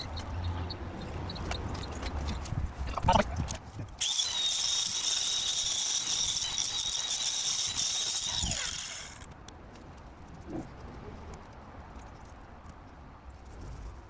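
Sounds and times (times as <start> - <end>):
power tool whining and spinning down: 4.0 - 9.3.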